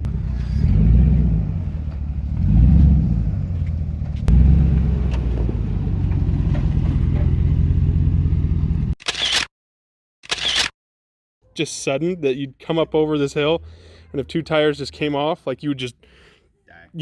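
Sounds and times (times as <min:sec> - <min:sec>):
engine revving: 0:00.0 - 0:09.0.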